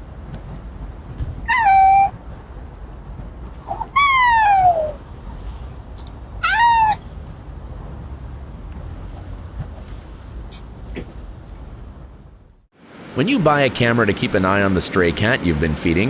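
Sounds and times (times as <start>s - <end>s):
animal meow-like cries: 1.5s - 2.2s, 3.7s - 5.0s, 6.4s - 7.0s.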